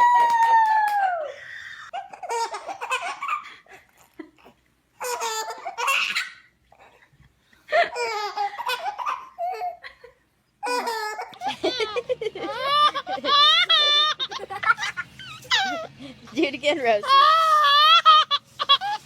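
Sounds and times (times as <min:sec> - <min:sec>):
baby laughing: 0:01.9 - 0:07.0, 0:07.7 - 0:10.0, 0:10.6 - 0:16.1, 0:17.0 - 0:19.0.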